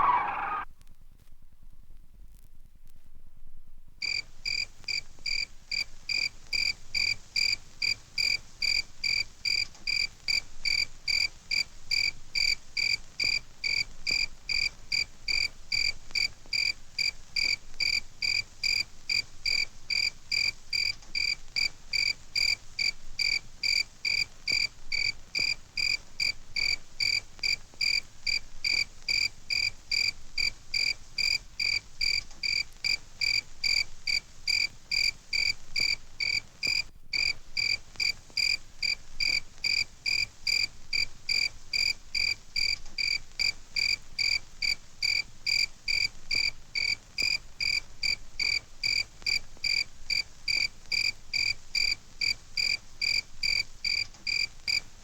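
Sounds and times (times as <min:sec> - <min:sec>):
cricket chirping: 0:00.0 - 0:00.6, 0:22.0 - 0:54.9.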